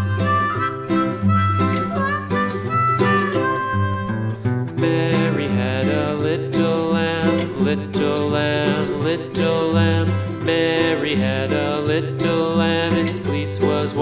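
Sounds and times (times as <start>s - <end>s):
country band playing: 0.0s - 5.5s
acoustic guitar: 0.0s - 14.0s
harmonica: 0.0s - 14.0s.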